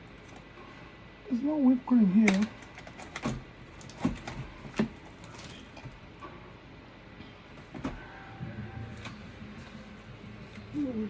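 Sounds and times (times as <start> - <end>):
packages knocked and shifted: 2.3 - 6.3, 7.5 - 8.2.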